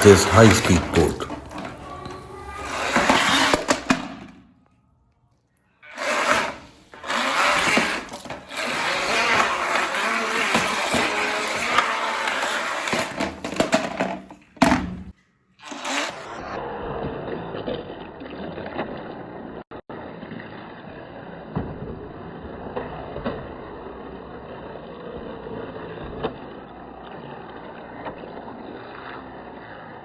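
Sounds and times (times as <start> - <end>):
toy boat motor churning water: 1.4 - 4.0, 5.8 - 13.8, 16.8 - 30.0.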